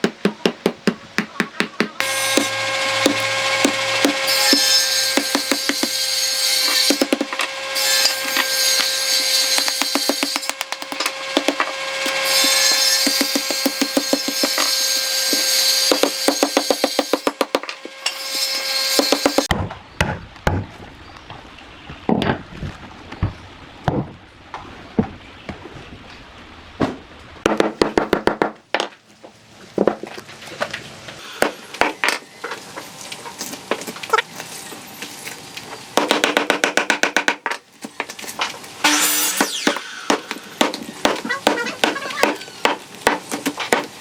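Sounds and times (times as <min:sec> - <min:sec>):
tool striking wood: 0:00.0 - 0:20.6.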